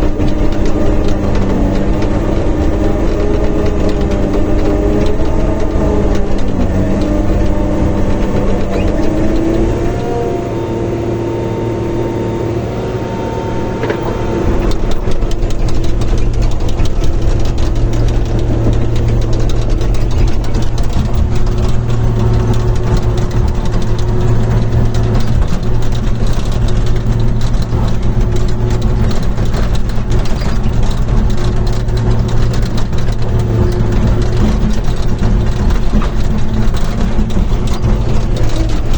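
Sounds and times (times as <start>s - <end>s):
dozer diesel engine clattering: 0.0s - 38.9s.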